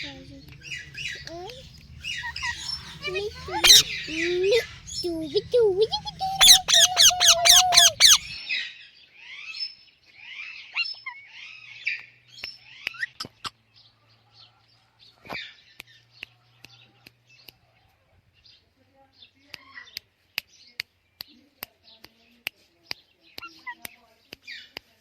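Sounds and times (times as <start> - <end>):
parrot chirping: 0.0 - 8.4
parrots calling sharply: 0.6 - 8.4.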